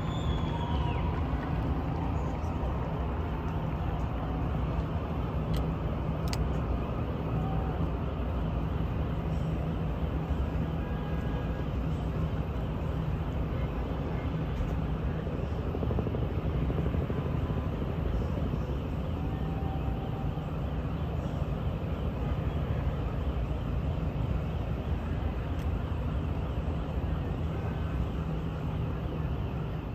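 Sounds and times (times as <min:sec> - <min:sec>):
traffic and engines rumbling: 0:00.0 - 0:29.9.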